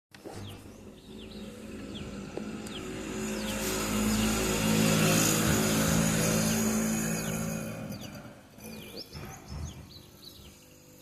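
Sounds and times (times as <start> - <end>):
engine-like hum: 0.1 - 11.0
small birds chirping: 0.1 - 11.0.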